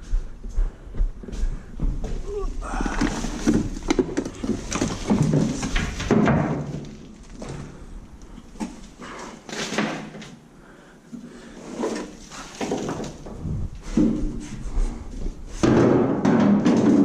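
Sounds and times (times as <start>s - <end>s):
objects scraping and knocking: 2.7s - 10.4s, 11.4s - 17.0s.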